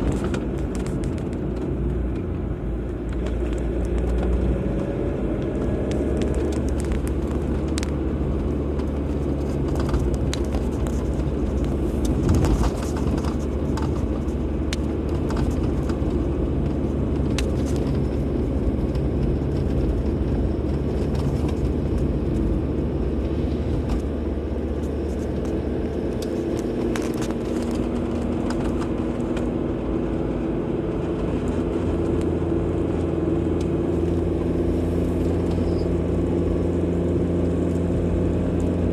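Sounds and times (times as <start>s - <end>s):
car engine drone: 0.0s - 38.9s
road and tyre noise: 0.0s - 38.9s.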